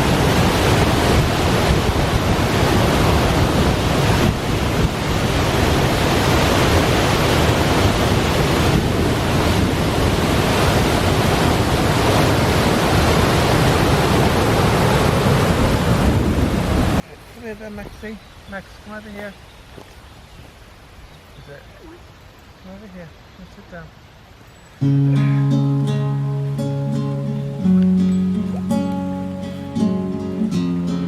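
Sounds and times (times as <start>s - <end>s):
river roaring over falls: 0.0s - 17.0s, 24.8s - 31.0s.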